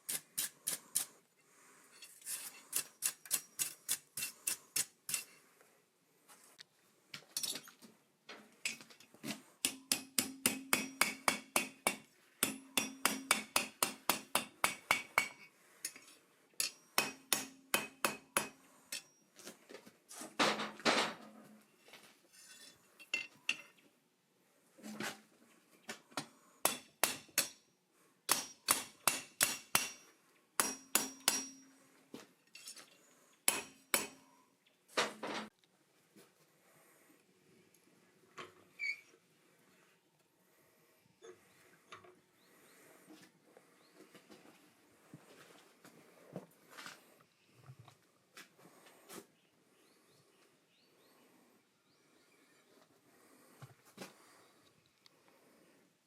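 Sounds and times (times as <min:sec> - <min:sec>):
hammer striking steel on anvil: 0:09.6 - 0:15.5, 0:16.6 - 0:19.2, 0:26.6 - 0:27.7, 0:28.3 - 0:31.7, 0:33.5 - 0:34.2.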